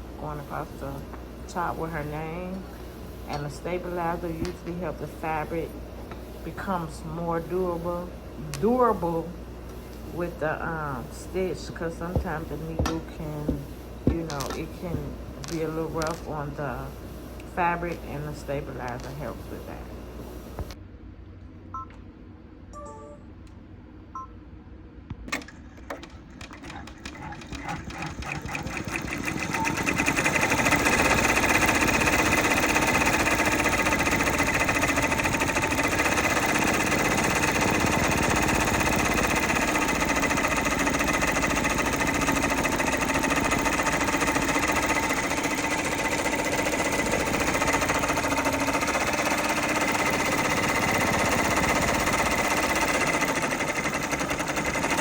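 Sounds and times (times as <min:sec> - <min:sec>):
embroidery machine stitching: 0:25.9 - 0:55.0.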